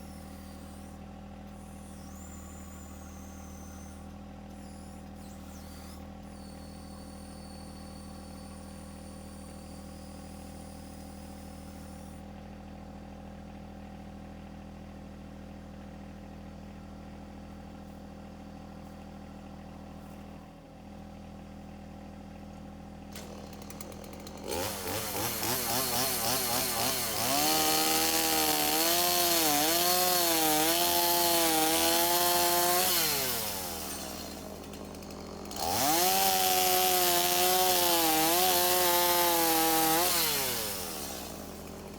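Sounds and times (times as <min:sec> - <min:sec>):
small engine idling: 0:00.0 - 0:41.9
chainsaw revving and cutting: 0:23.1 - 0:41.9.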